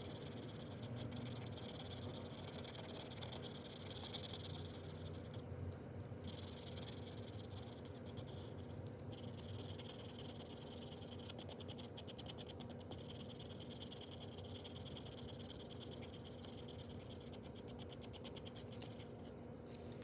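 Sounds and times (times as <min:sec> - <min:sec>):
paint pen scratching: 0:00.0 - 0:05.4, 0:06.3 - 0:19.3.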